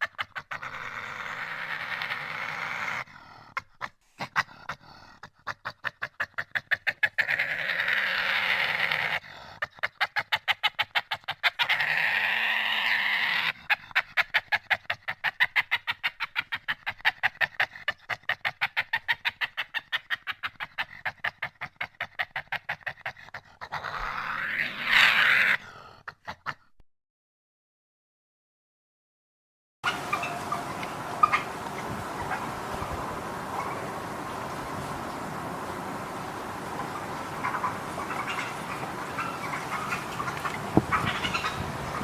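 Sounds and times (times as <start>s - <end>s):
badger calling: 29.9s - 34.0s, 36.8s - 42.0s.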